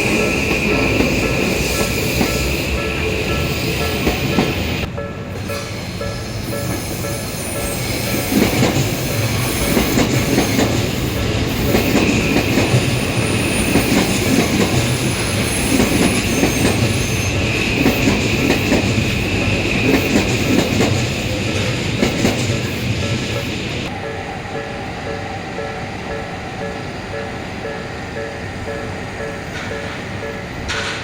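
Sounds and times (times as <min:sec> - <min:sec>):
high wheel squeal: 0:05.5 - 0:20.2.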